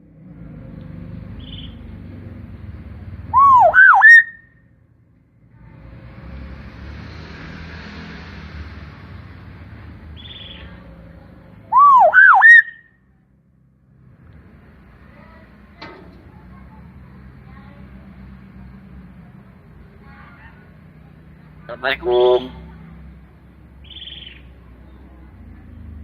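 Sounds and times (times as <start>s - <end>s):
bird whistled call: 1.4s - 1.8s, 3.3s - 4.6s, 10.2s - 10.7s, 11.7s - 12.9s, 23.8s - 24.5s.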